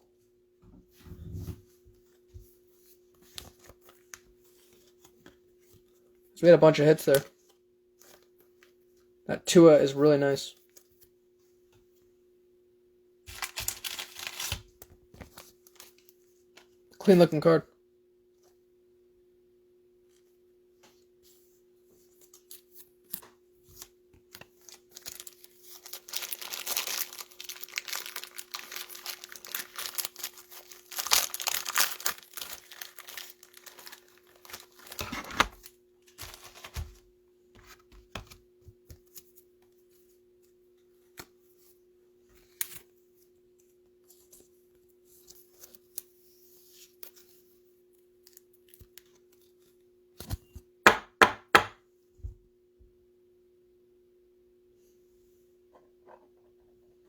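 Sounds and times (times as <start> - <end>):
plastic sleeves rustling: 13.3 - 17.3, 21.1 - 39.5.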